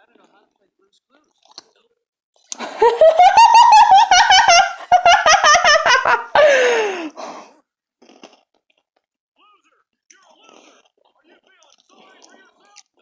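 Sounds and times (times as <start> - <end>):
high-pitched pulsing laughter: 2.6 - 7.1.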